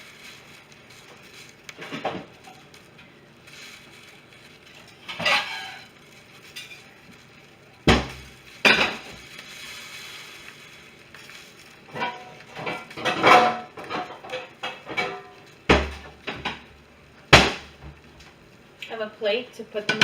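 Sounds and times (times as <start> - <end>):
dishes and utensils clinking: 4.8 - 5.9, 11.8 - 16.6.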